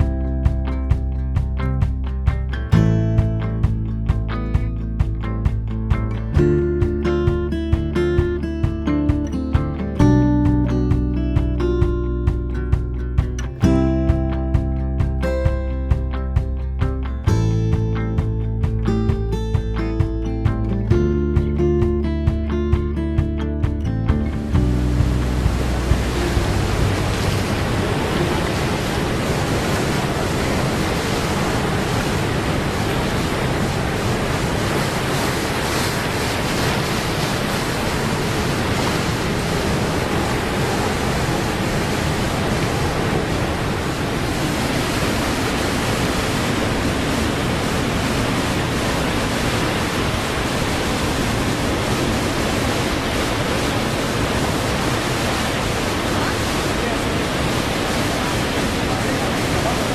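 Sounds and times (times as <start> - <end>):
water rushing in rapids: 0.0 - 59.9.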